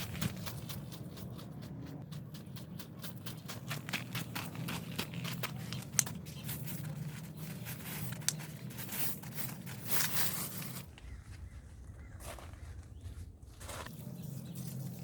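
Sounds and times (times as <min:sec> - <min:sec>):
scraping and rustling strokes: 0:00.0 - 0:11.0
steady low hum: 0:00.0 - 0:15.0.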